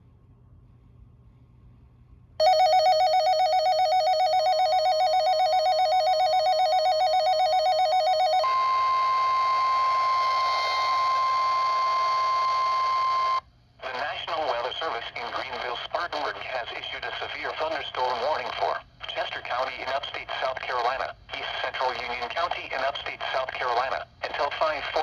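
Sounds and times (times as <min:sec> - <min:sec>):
steady alarm tone: 0:02.4 - 0:13.4
warbling electronic siren: 0:02.4 - 0:13.4
radio static hiss: 0:13.8 - 0:25.0.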